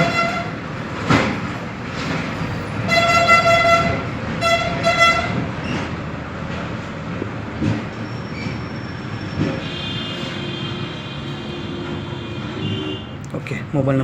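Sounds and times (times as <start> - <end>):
horn tooting: 0.0 - 0.6, 2.9 - 5.5, 9.2 - 13.2.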